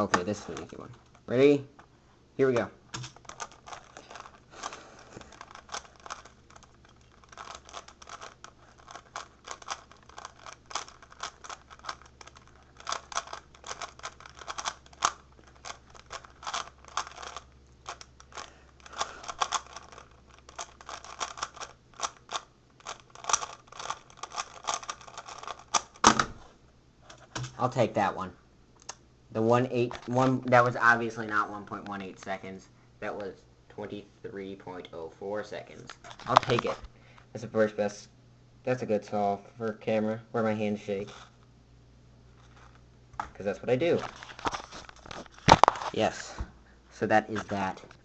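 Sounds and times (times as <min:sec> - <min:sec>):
plastic puzzle cube clicking: 0:02.6 - 0:26.2.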